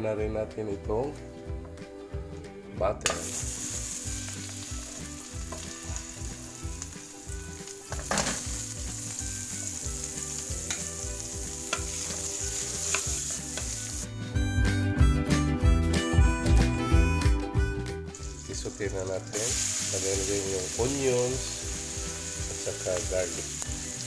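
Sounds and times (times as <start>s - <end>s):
music with a beat: 0.9s - 24.0s
butter sizzling in a pan: 3.1s - 14.2s, 18.2s - 24.0s.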